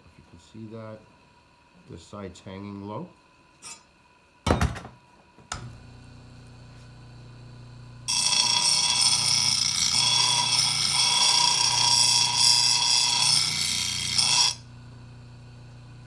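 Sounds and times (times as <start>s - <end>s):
grinder humming: 5.5s - 16.0s
grinder rasping on steel blade: 8.0s - 14.8s.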